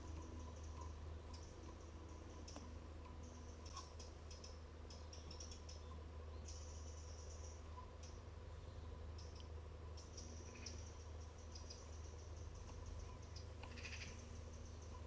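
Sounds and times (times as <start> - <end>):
high-pitched ticking and clicking: 0.0 - 5.8, 9.2 - 15.0
low hum: 0.0 - 15.0.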